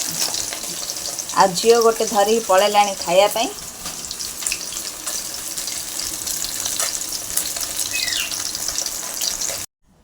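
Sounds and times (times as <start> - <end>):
fish sizzling in hot oil: 0.0 - 9.7.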